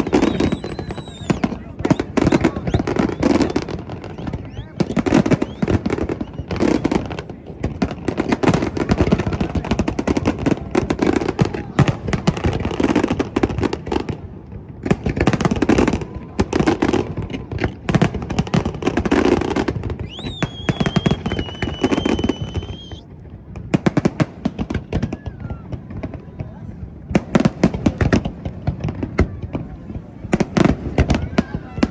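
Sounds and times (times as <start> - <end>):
high steady whistle: 0.0 - 6.9, 20.0 - 23.0
fireworks crackling and booming: 0.0 - 31.9.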